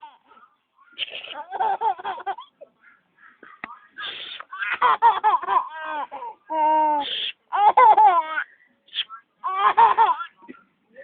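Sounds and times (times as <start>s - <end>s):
baby giggling: 1.0s - 2.7s, 4.4s - 8.5s, 9.4s - 10.6s.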